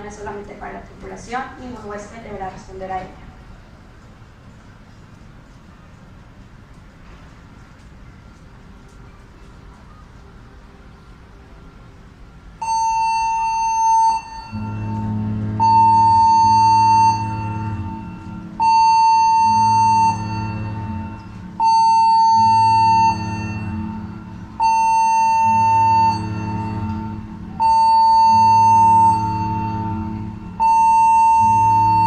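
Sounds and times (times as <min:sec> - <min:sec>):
deeper alarm tone: 0:12.5 - 0:32.0
shrill electronic alarm tone: 0:12.6 - 0:32.0.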